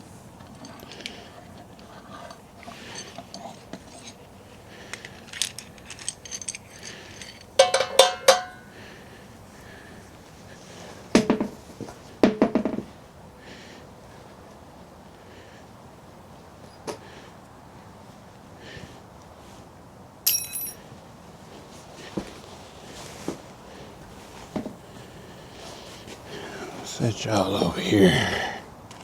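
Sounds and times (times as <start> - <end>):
metal parts clinking: 4.9 - 8.7, 20.3 - 20.8.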